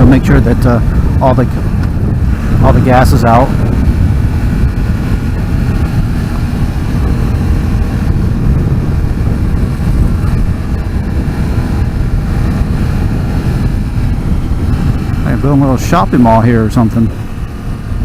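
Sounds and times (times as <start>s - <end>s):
motorcycle engine rumble: 0.0s - 18.0s
wind rushing over microphone: 0.0s - 18.0s.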